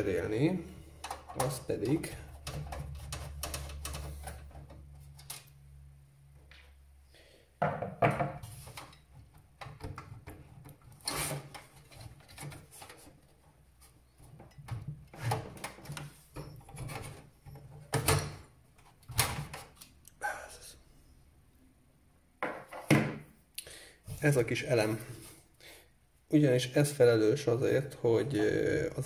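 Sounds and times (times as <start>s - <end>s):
hardware knocks and clatters: 7.6s - 10.9s.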